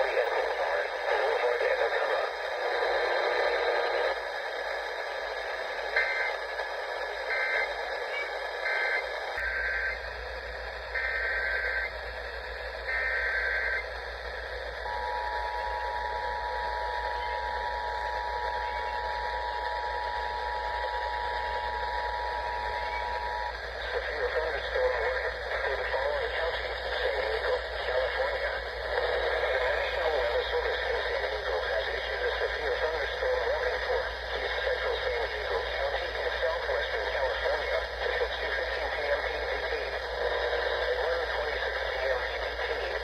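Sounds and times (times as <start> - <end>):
radio hiss: 0.0 - 43.0
two-tone attention signal: 8.6 - 10.0, 11.0 - 11.9, 12.9 - 13.8.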